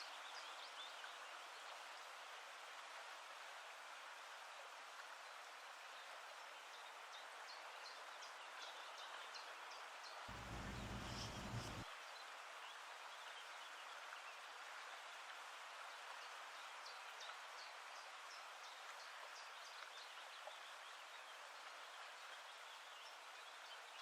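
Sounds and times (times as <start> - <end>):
light crackles: 10.3 - 11.8
faint steady hiss: 10.3 - 11.9.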